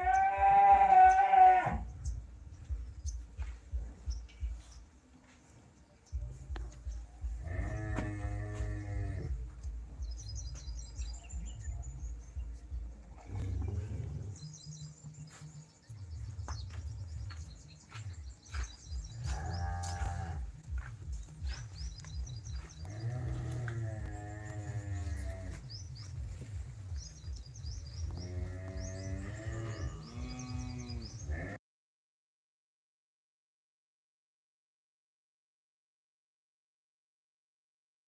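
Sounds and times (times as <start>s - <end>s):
cows mooing: 0.0s - 1.9s, 7.4s - 9.4s, 19.2s - 20.4s, 22.8s - 25.6s, 28.1s - 31.6s
small birds chirping: 0.0s - 31.6s
low rumble: 6.1s - 14.9s.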